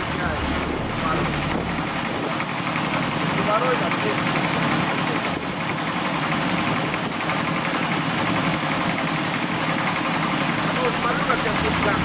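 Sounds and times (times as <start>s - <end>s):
drilling rig engine running: 0.0s - 12.0s.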